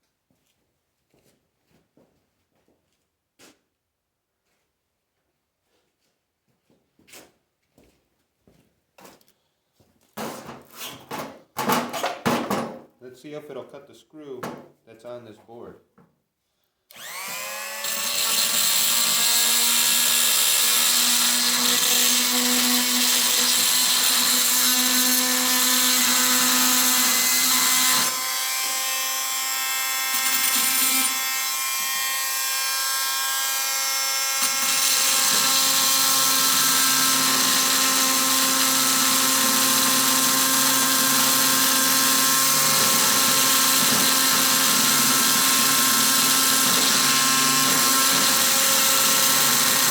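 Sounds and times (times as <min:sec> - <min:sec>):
oscillating multi-tool whining: 0:16.9 - 0:49.9.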